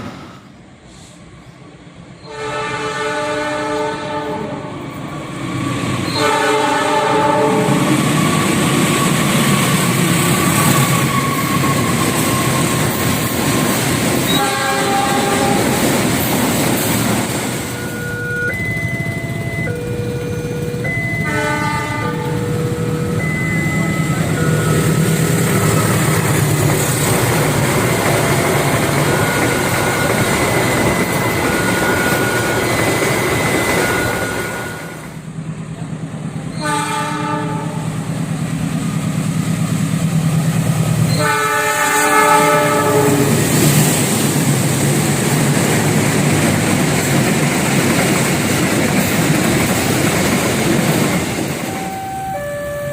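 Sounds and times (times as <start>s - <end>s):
train rumbling and clattering on rails: 0.0s - 52.9s
train horn blasts: 2.2s - 4.7s, 6.1s - 7.9s, 14.3s - 15.9s, 19.9s - 23.2s, 36.5s - 38.0s, 41.1s - 43.4s.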